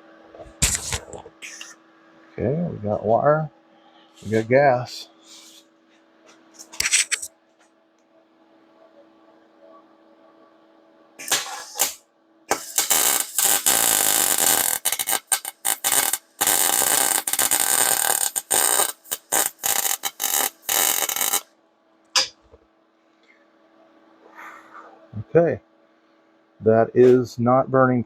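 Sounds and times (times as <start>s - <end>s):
welder arc crackling: 11.2s - 21.5s.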